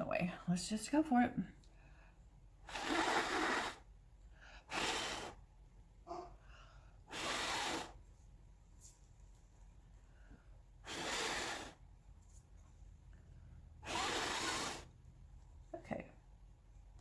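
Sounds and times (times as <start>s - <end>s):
person blowing hard: 2.6s - 3.9s, 4.6s - 5.5s, 7.0s - 8.0s, 10.8s - 11.8s, 13.8s - 14.9s.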